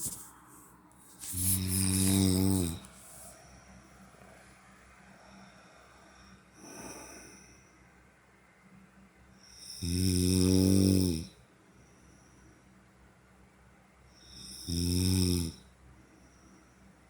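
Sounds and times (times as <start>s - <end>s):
faint breath: 0.0s - 8.4s, 11.6s - 13.4s, 15.8s - 17.0s
loud low snore: 1.3s - 2.9s, 9.6s - 11.4s, 14.3s - 15.6s.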